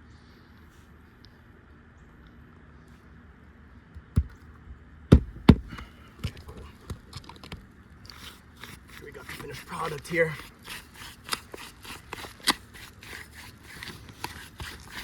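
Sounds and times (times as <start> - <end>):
hand tools knocking on roof: 5.1 - 5.8.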